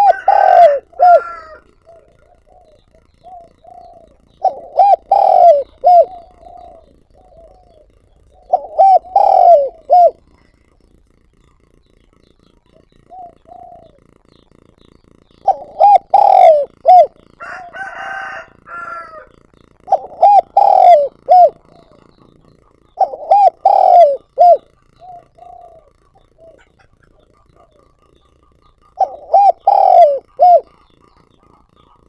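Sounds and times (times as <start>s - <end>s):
rough high-pitched bird call: 0.0s - 10.5s, 15.3s - 32.0s
dove cooing: 0.0s - 32.0s.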